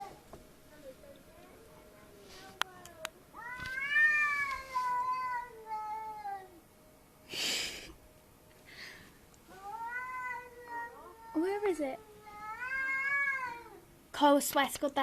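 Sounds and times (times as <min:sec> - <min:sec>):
cat yowling: 0:03.4 - 0:06.5, 0:09.5 - 0:13.8.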